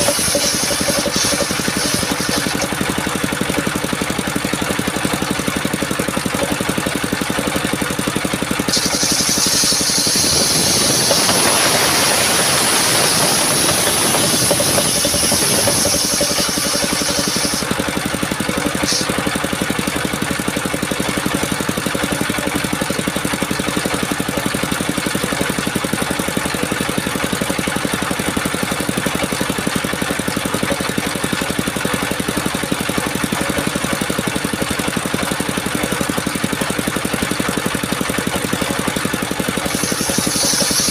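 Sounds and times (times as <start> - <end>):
saw blade hissing through wood: 0.0 - 2.9, 8.6 - 17.8, 18.5 - 19.4, 39.5 - 40.9
sawmill engine running: 0.0 - 40.9.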